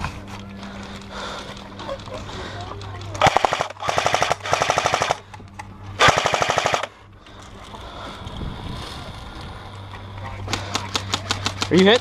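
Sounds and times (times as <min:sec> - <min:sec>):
airsoft gun full auto bursts: 0:03.2 - 0:05.2, 0:06.0 - 0:06.9.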